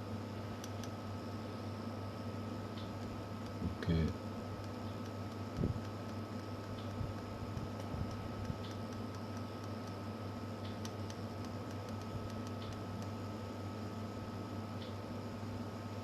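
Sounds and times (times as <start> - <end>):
electrical hum with high tone: 0.0 - 16.0
metal probe tips ticking on pins: 2.8 - 10.0, 10.6 - 13.2.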